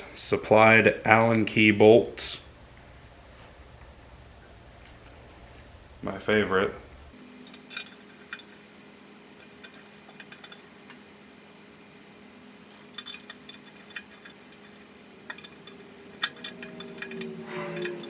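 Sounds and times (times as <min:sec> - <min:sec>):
metal bolts clinking: 0:07.2 - 0:18.0.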